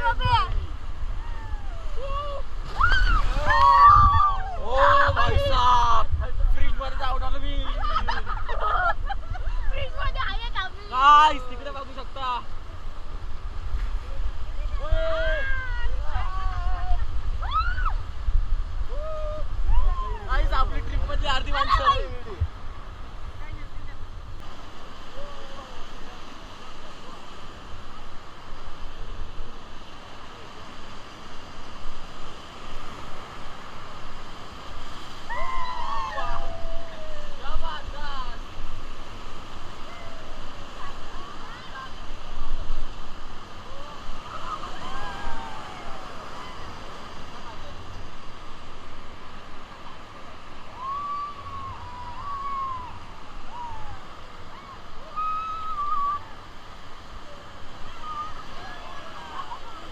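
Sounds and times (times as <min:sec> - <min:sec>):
river water rushing: 0:00.0 - 0:59.9
people whooping: 0:01.2 - 0:05.4, 0:17.4 - 0:18.0, 0:18.9 - 0:20.3, 0:35.2 - 0:37.6, 0:43.6 - 0:46.8, 0:50.6 - 0:56.4.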